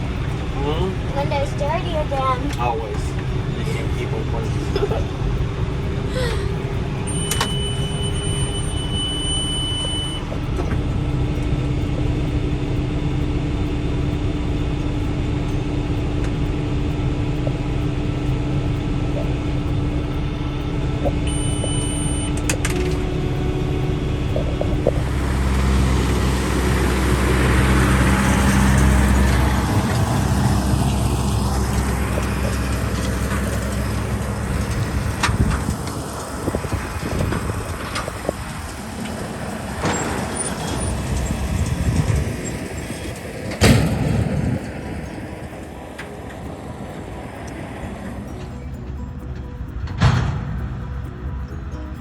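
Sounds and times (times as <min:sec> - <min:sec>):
high steady tone: 0:00.0 - 0:41.4
tractor engine running: 0:00.0 - 0:52.0.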